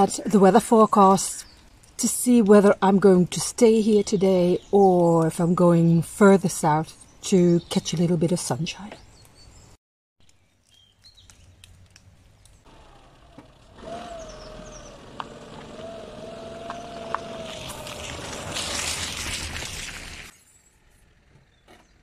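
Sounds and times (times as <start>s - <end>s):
vehicle engine whine: 12.4s - 20.3s
rushing hiss: 17.3s - 20.3s.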